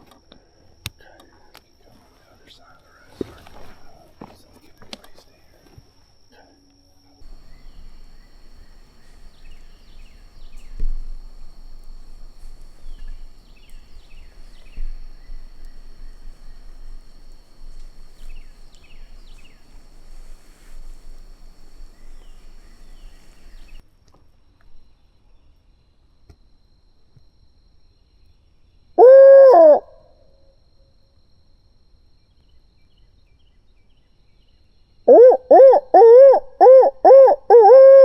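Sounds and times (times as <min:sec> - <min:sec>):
insects trilling: 0:00.0 - 0:23.8, 0:27.5 - 0:30.0, 0:30.6 - 0:38.0
faint bird chirps: 0:07.2 - 0:23.8
wind buffeting microphone: 0:07.2 - 0:23.8.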